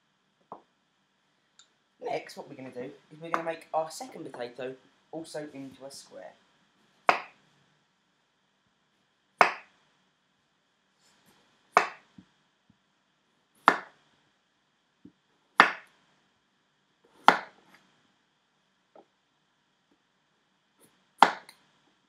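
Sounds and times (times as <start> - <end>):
knife chopping potato on board: 7.1 - 7.4, 9.4 - 9.7, 11.8 - 12.1, 13.6 - 14.0, 15.6 - 15.9, 17.2 - 17.6, 21.2 - 21.6.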